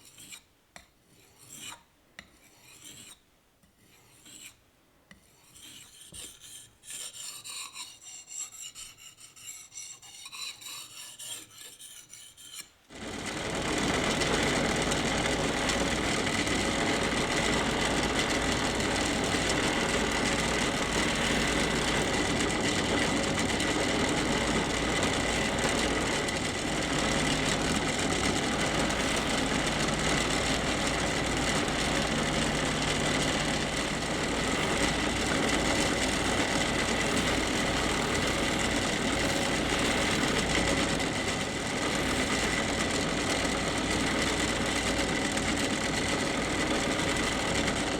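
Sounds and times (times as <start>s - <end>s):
hand file scraping steel: 0.0s - 12.8s, 13.8s - 45.7s
power tool motor whining: 12.9s - 47.9s.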